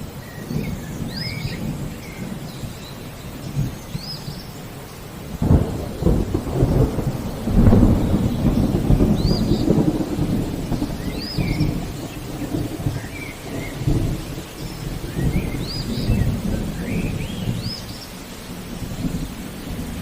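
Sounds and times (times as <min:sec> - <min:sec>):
rolling rumble of thunder: 0:00.0 - 0:20.0
steady rain: 0:00.0 - 0:20.0
thunder crack: 0:05.2 - 0:17.8.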